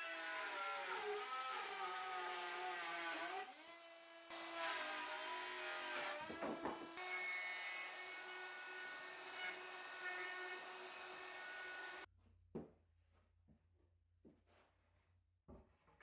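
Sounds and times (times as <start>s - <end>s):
power tool motor whining: 6.4s - 12.1s.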